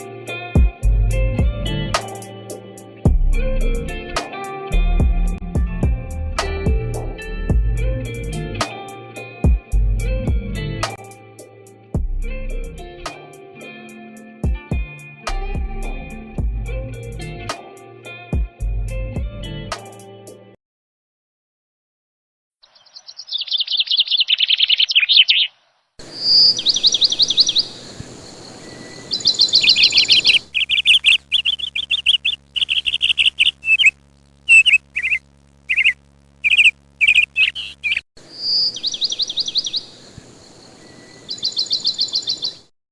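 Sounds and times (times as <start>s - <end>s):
songbird chirping: 22.6s - 42.7s.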